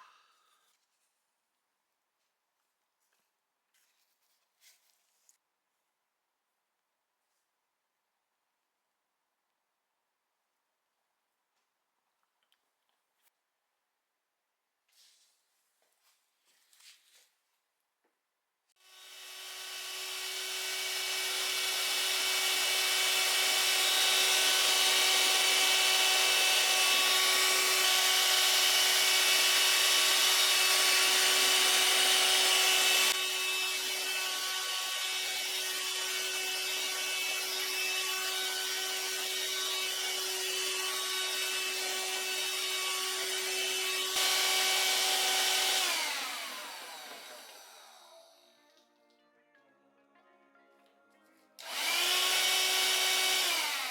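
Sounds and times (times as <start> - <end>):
handheld vacuum cleaner whining: 18.8 - 48.9, 51.6 - 53.9.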